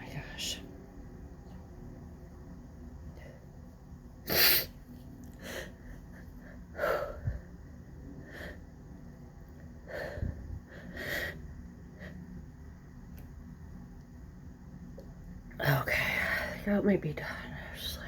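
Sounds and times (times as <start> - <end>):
wheezy gasping breaths: 9.8 - 12.2.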